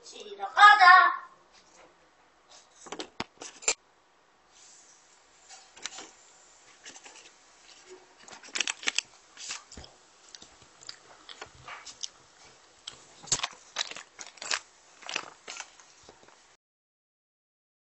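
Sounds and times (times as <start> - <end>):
brownie being bitten and chewed: 7.9 - 16.4.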